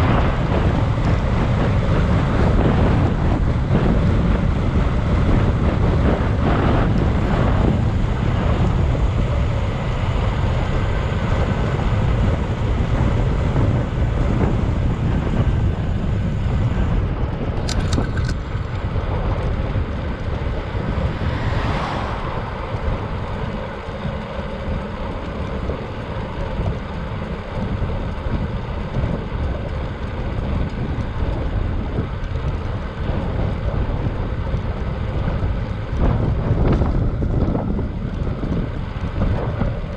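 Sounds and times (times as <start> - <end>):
wind rushing over microphone: 0.0 - 39.9
sharp clicks: 17.6 - 18.4.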